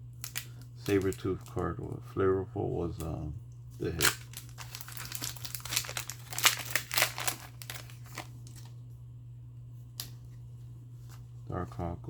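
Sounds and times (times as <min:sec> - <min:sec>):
foil wrapper crinkling: 0:00.0 - 0:02.0, 0:03.7 - 0:08.9.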